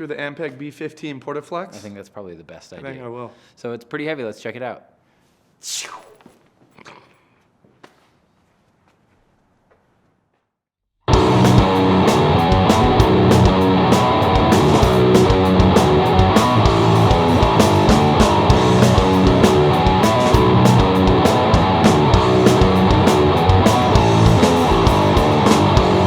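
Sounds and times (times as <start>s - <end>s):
bass guitar: 11.1s - 26.0s
distorted electric guitar riff: 11.1s - 26.0s
drum kit beat: 11.1s - 26.0s.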